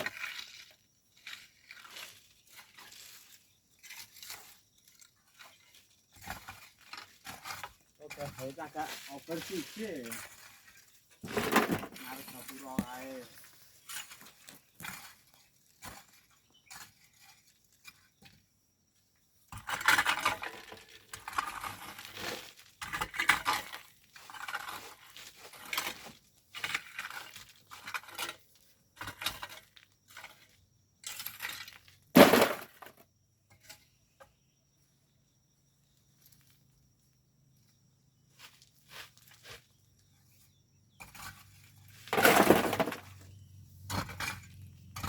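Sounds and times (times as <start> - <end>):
hand tools scraping sand: 0.0 - 18.2, 19.6 - 30.4
stones clinking and knocking: 11.2 - 17.0.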